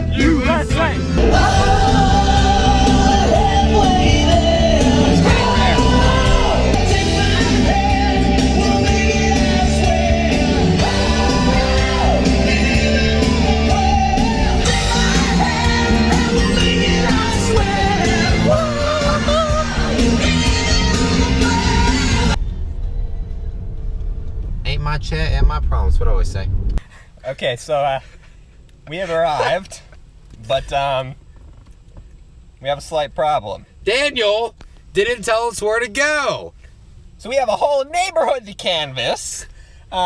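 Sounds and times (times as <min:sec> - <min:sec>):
rock music with sung vocal: 0:00.0 - 0:22.4.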